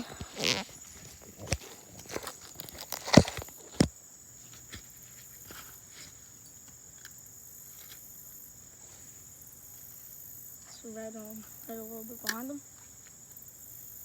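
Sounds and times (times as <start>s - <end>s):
footsteps on sandy ground: 0.0s - 6.3s
high insect trill: 0.0s - 14.0s.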